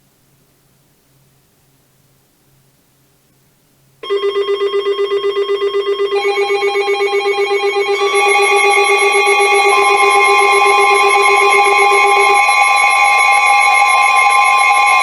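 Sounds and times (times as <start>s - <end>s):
pulsing alarm tones: 4.0s - 15.0s.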